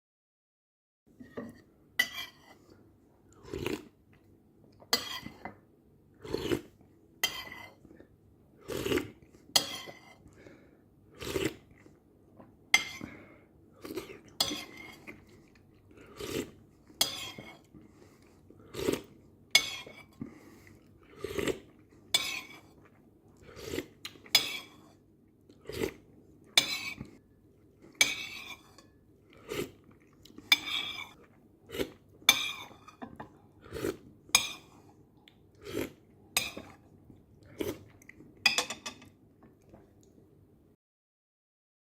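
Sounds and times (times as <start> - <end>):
wet slurping of soup: 29.3 - 32.7
cutlery clinking against dish: 38.5 - 39.1.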